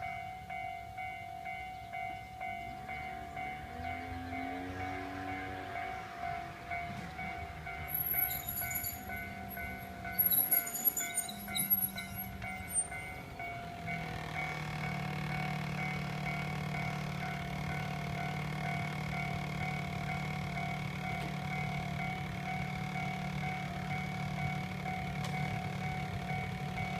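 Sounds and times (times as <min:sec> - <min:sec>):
level crossing bell ringing: 0:00.0 - 0:26.9
train wheels squealing and clattering: 0:07.9 - 0:13.2.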